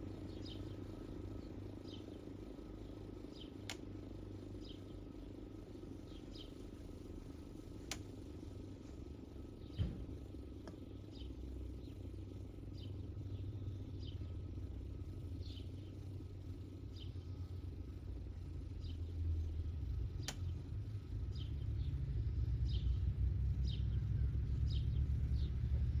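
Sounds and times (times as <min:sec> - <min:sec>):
steady low rumble: 0:00.0 - 0:26.0
sharp click: 0:20.2 - 0:20.5.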